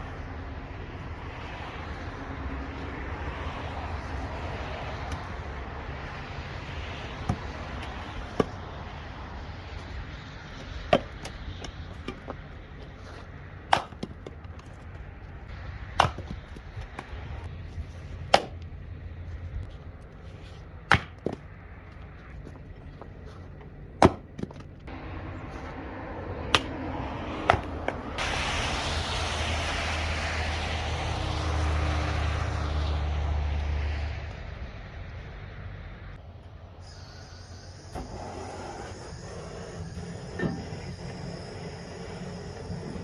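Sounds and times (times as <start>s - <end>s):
axe chopping firewood: 7.2s - 8.6s, 10.8s - 12.3s, 13.6s - 14.6s, 15.9s - 17.2s, 18.2s - 18.7s, 20.7s - 21.5s, 23.9s - 24.8s, 26.4s - 26.8s, 27.4s - 28.0s.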